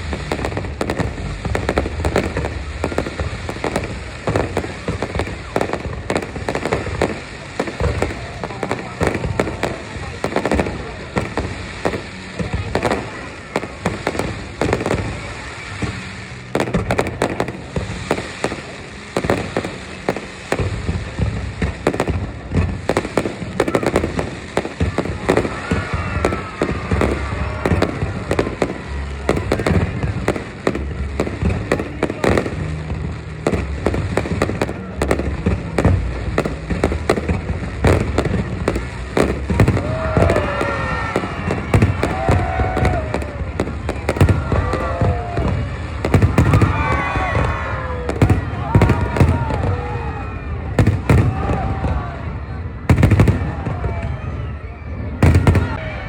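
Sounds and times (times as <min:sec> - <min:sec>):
fireworks bangs and crackles: 0:00.0 - 0:56.0
low fireworks booms: 0:00.0 - 0:56.0.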